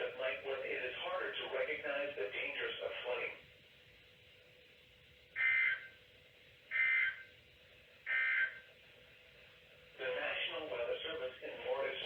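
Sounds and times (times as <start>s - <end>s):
two-tone data bursts: 5.4s - 6.0s, 6.7s - 7.3s, 8.1s - 8.6s.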